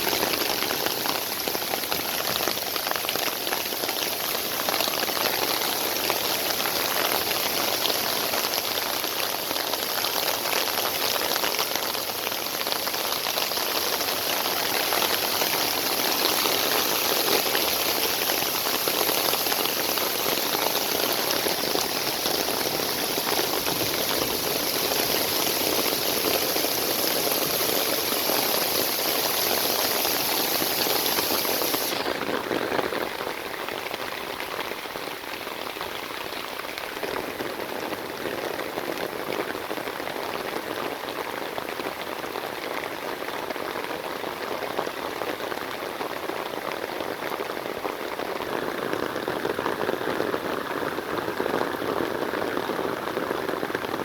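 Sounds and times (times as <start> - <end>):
rain pattering: 0.0 - 54.0
high hiss: 28.0 - 32.2.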